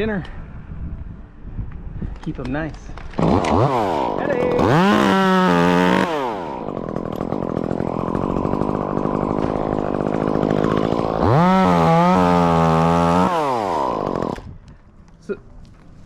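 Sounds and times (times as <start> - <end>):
chainsaw revving and idling: 3.1 - 14.5.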